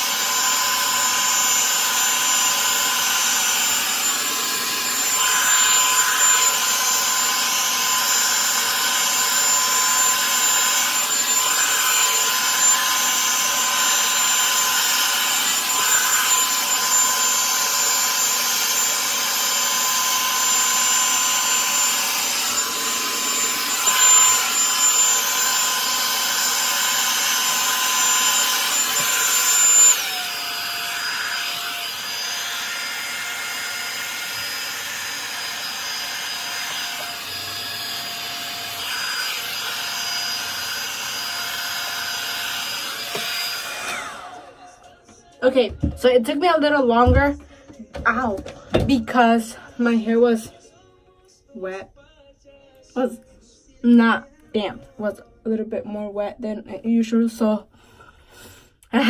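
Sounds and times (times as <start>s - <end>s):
hair dryer brush whirring: 0.0s - 44.7s.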